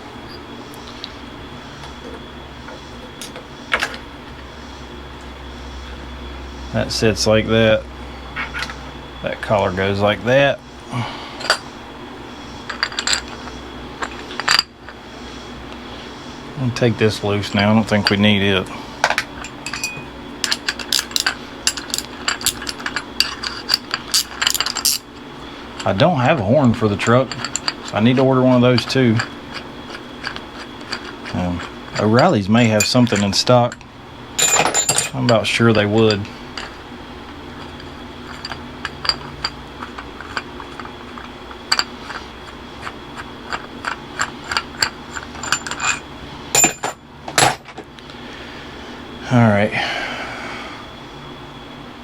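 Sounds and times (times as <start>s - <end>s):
steady low hum: 0.0s - 52.0s
metallic clicks of small parts: 19.1s - 25.0s.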